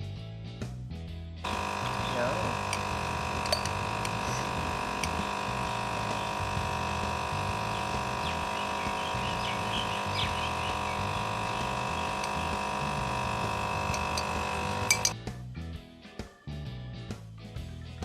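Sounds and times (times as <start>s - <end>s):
induction heater humming: 1.4s - 15.2s.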